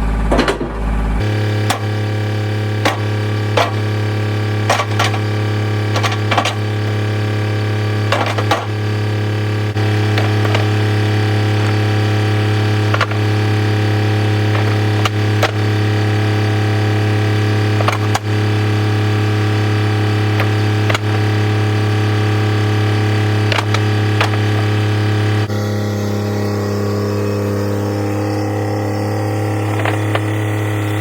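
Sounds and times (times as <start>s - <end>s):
mechanical hum: 0.0s - 31.0s
sharp knocks: 1.6s - 2.1s, 2.8s - 4.0s, 4.7s - 6.9s, 8.1s - 8.9s, 9.7s - 10.8s, 12.9s - 13.5s.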